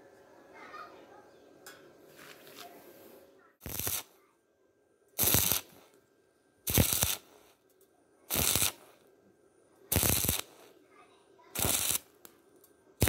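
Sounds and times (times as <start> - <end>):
welding arc bursts: 3.6 - 4.1, 5.2 - 5.8, 6.7 - 7.4, 8.3 - 8.9, 9.9 - 10.7, 11.6 - 12.3.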